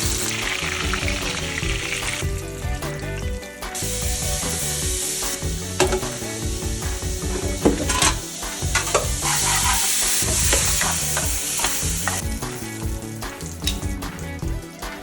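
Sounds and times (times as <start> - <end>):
chicken sizzling in hot oil: 0.0 - 13.8
utensil scraping a pan: 7.3 - 12.2.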